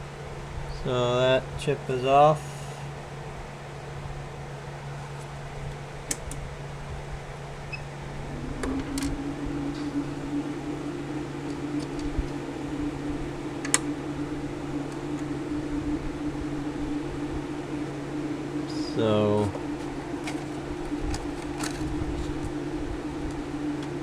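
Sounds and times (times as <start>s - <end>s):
electrical hum: 5.3s - 24.0s
higher electrical hum: 7.2s - 24.0s.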